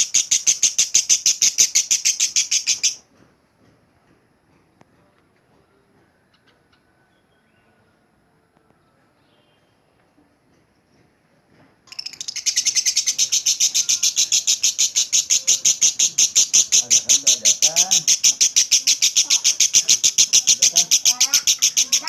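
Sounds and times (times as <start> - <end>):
lovebird chattering: 0.0 - 3.0, 11.9 - 22.0.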